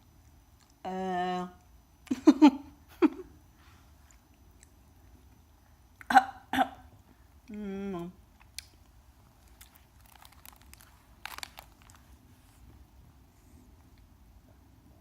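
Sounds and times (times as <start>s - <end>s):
person humming: 7.5s - 8.2s
snack wrapper crinkling: 8.4s - 12.2s.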